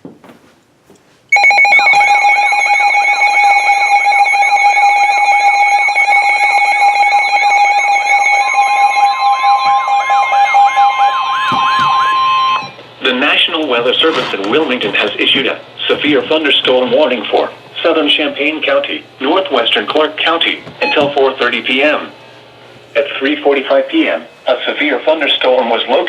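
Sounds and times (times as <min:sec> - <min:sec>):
steady single-pitch warning tone: 0:01.3 - 0:13.4, 0:15.9 - 0:23.0
warbling radio alarm: 0:01.3 - 0:13.8, 0:18.7 - 0:22.4.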